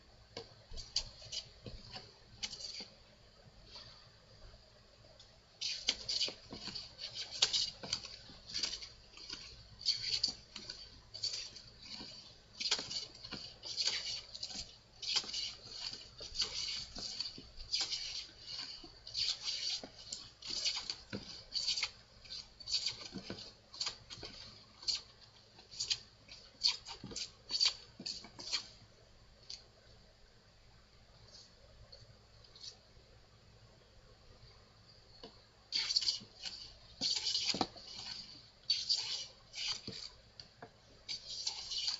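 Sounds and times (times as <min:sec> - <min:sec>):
hand plane shaving wood: 0:05.7 - 0:25.1.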